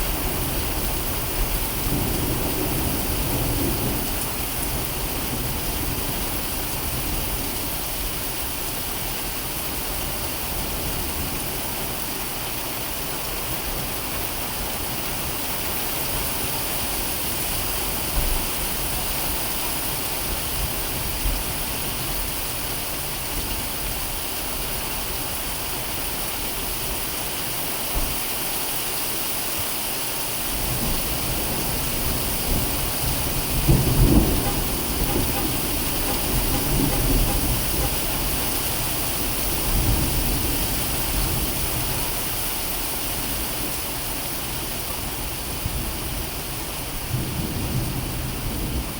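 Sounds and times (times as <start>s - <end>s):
thunder rumbling: 0.0s - 7.2s, 30.6s - 42.1s
heavy rain pouring: 0.0s - 48.9s.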